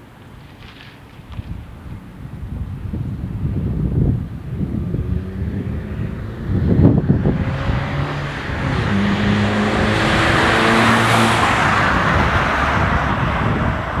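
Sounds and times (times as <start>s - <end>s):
road noise: 0.0s - 14.0s
car engine running: 4.5s - 14.0s.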